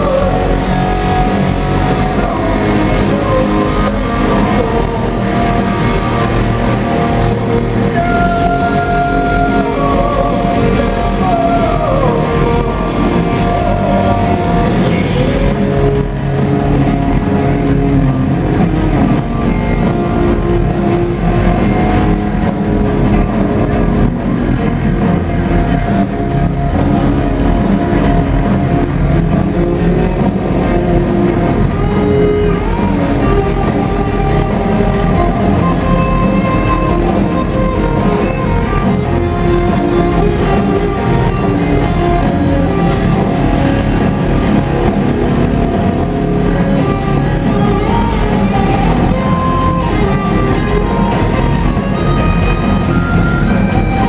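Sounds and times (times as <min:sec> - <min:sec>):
person singing: 0:00.0 - 0:16.2
electric guitar sliding down: 0:00.0 - 0:54.0
live rock band playing: 0:00.0 - 0:54.0
steady drum beat: 0:00.0 - 0:54.0.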